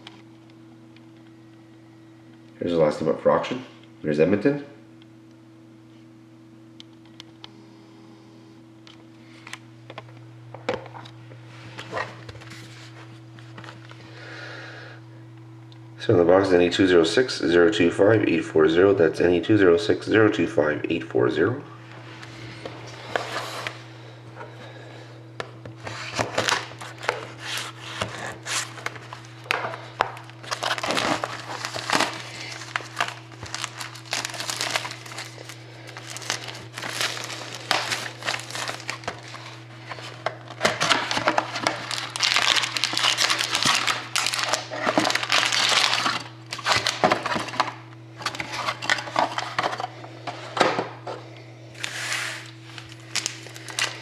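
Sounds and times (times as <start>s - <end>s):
steady low hum: 0.0s - 54.0s
plastic wrap crinkling and tearing: 25.9s - 49.4s, 51.8s - 54.0s.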